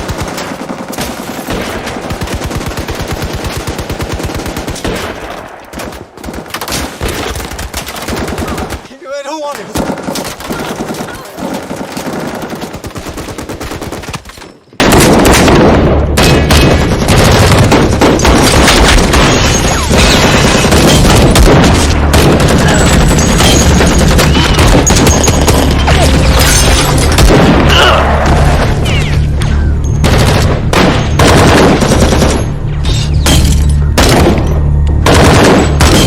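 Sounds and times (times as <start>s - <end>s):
film score with low bass: 20.7s - 36.0s
automatic gunfire: 30.0s - 32.4s, 35.0s - 36.0s.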